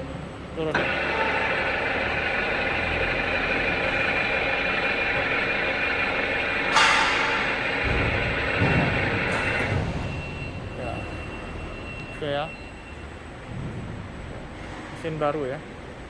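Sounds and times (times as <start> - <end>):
milling machine feed motor whine: 0.5 - 13.0
loud burst of noise: 0.8 - 10.6.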